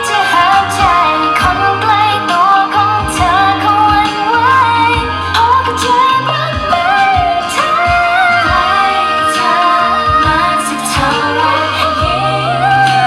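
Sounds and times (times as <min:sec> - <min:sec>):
low bass line: 0:00.0 - 0:13.0
woman singing pop melody: 0:00.0 - 0:13.0
kick drum: 0:03.0 - 0:04.1.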